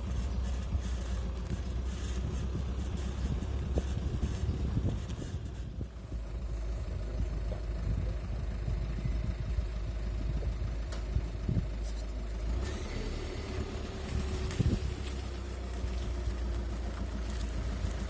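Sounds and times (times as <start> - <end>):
suspension creaks: 0.0 - 6.2
car road rumble: 0.0 - 18.0.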